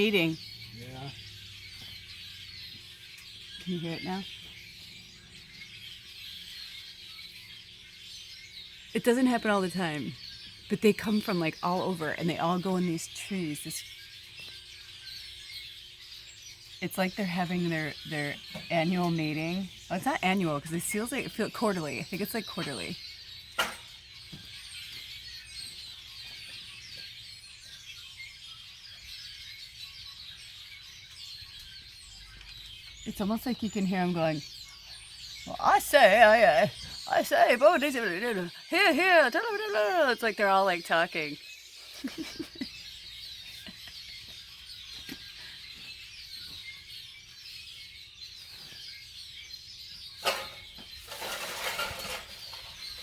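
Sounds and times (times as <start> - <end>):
flock of birds chirping: 0.0 - 53.0.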